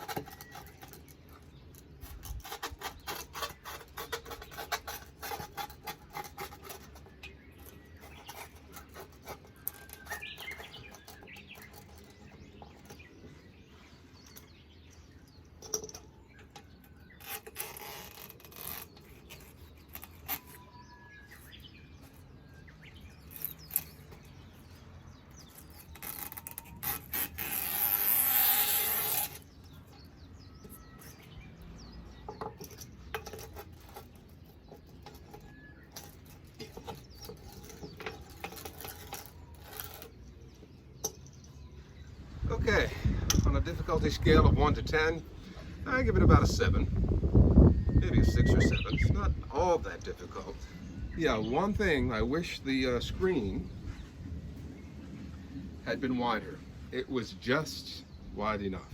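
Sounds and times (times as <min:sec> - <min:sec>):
rubbing and taps: 0:00.0 - 0:13.1
scraping rasp: 0:00.0 - 0:14.6, 0:15.4 - 0:41.2.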